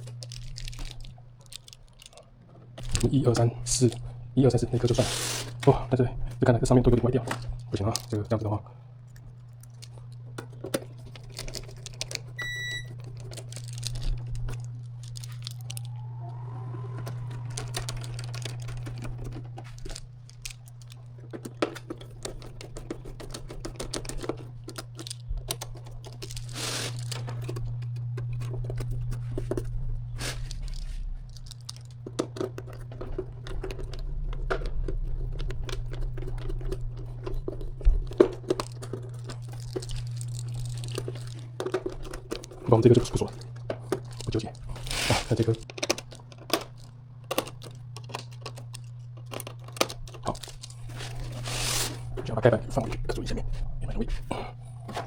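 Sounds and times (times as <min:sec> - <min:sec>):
steady low hum: 0:00.0 - 0:55.0
short high beep: 0:12.4 - 0:12.9.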